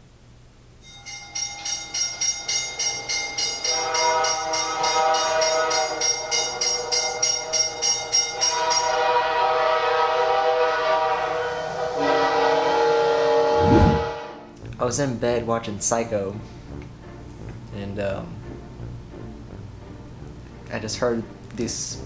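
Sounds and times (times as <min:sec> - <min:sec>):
fast high ringing: 0:00.8 - 0:09.0
train horn chord: 0:03.4 - 0:14.6.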